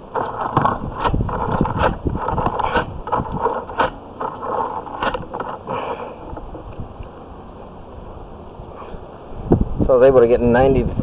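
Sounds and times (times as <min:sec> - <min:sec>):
cable scraping through metal pipe: 0:00.0 - 0:06.4.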